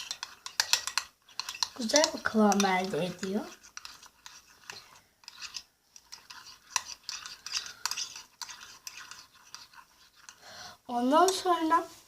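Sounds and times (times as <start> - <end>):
spoon scraping a bowl: 0.0 - 10.4, 11.1 - 11.9.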